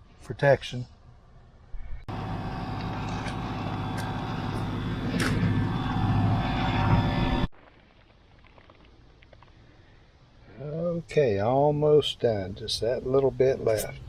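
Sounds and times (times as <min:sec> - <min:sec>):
steady mechanical drone: 0:01.6 - 0:07.5.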